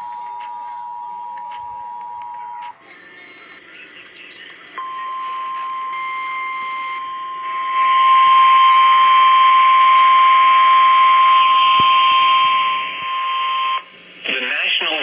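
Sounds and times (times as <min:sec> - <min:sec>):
steady high alarm tone: 0:00.0 - 0:02.8, 0:04.8 - 0:14.1
radio hiss: 0:00.1 - 0:09.1, 0:10.8 - 0:15.0.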